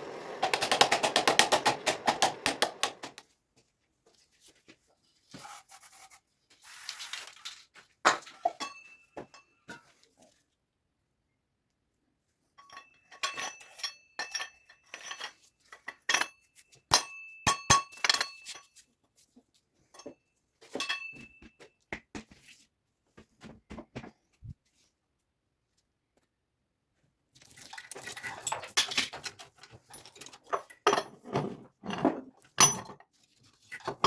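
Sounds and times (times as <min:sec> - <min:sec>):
metal tools clinking and clanking: 0:12.6 - 0:18.8, 0:19.9 - 0:21.4, 0:27.4 - 0:34.0.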